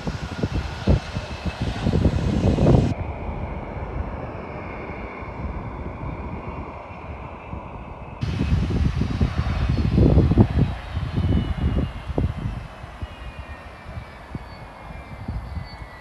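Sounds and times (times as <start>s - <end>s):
airliner engines running: 0.0s - 16.0s
wind buffeting microphone: 0.0s - 16.0s.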